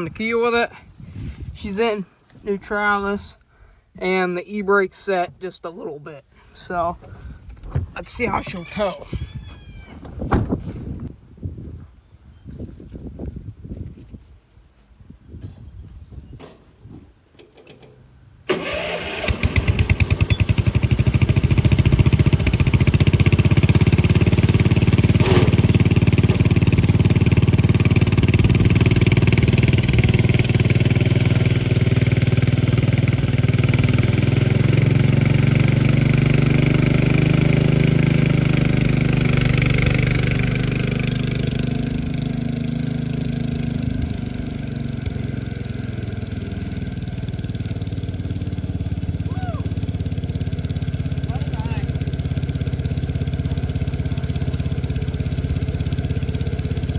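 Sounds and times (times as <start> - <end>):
tractor engine running under load: 18.5 - 56.9.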